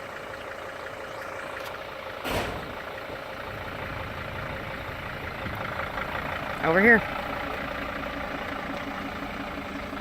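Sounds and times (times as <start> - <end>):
vehicle engine idling: 0.0 - 10.0
sharp thump: 2.2 - 2.8.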